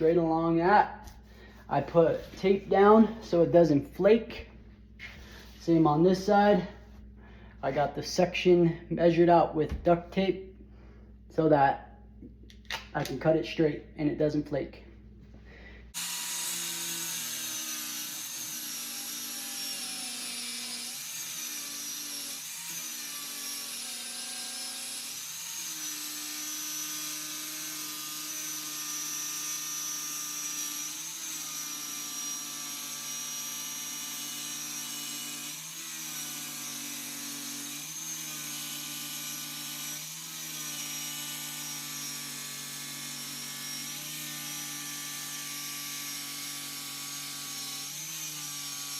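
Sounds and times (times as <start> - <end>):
electric power saw cutting: 15.9 - 48.9.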